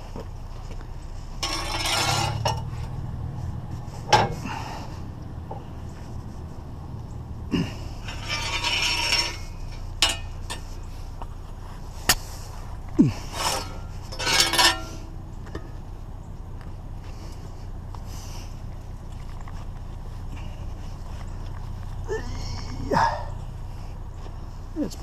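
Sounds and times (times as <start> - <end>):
steady low hum: 0.0 - 25.0
objects scraping: 0.6 - 3.0, 7.6 - 11.0, 11.8 - 15.7.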